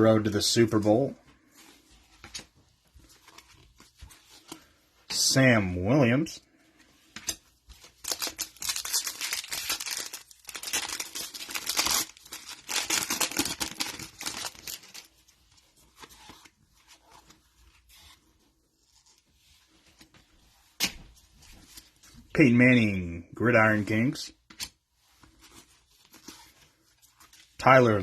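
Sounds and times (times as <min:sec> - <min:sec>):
wrapper rustling: 0:07.8 - 0:18.2
wrapper ripping: 0:08.0 - 0:15.1.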